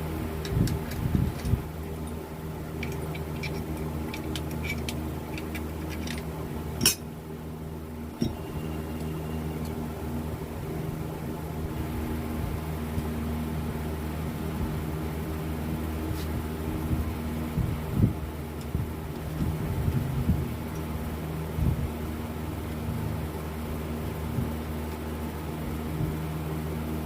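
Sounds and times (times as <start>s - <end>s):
steady low hum: 0.0s - 27.0s
metal parts clicking: 0.4s - 7.0s.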